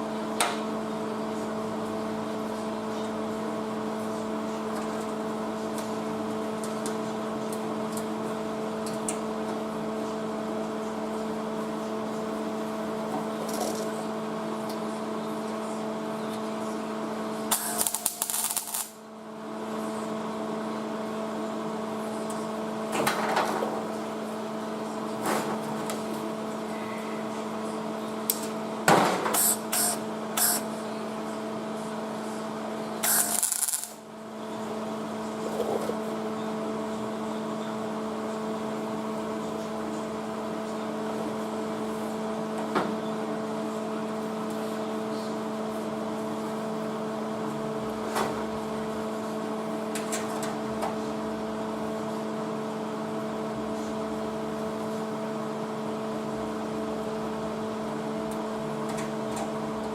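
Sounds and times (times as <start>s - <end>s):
machine hum: 8.5s - 44.2s.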